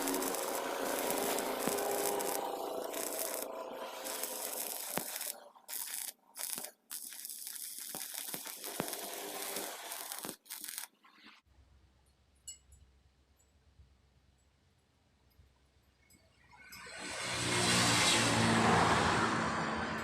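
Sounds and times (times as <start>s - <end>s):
welding arc crackling and sizzling: 0.0s - 11.4s.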